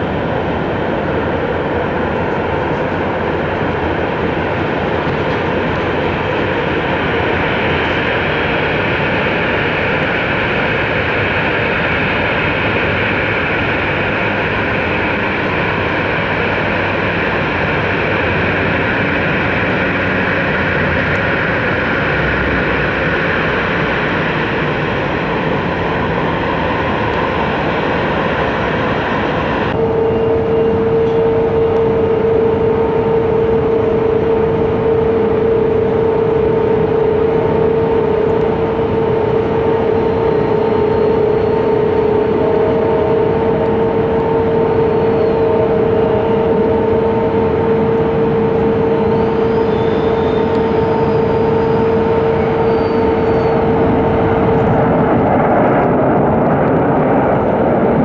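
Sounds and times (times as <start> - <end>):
jet engines running: 0.0 - 58.0
strong steady tone: 17.6 - 56.8.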